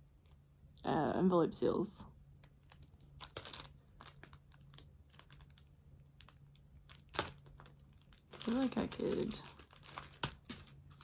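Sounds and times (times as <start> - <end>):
sticker pack clicks and rustles: 2.4 - 11.0.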